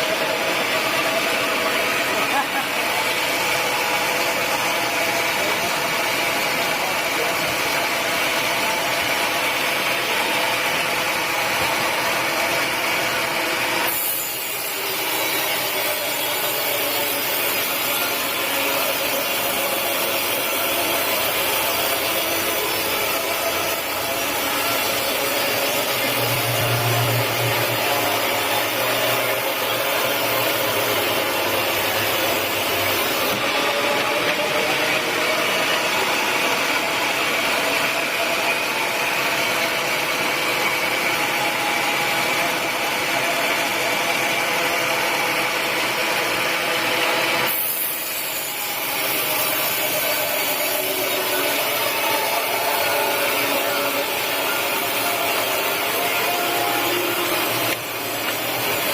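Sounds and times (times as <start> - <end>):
saw cutting through log: 0.0 - 58.9
low hum: 26.0 - 29.0.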